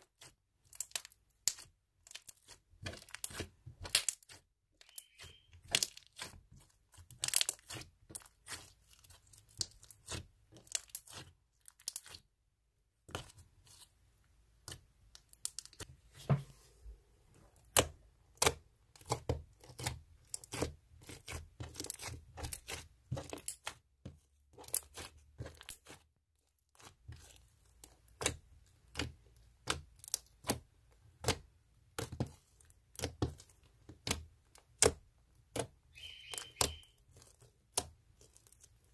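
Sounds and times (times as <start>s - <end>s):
slime popping and crackling: 0.2s - 12.2s, 24.5s - 26.0s.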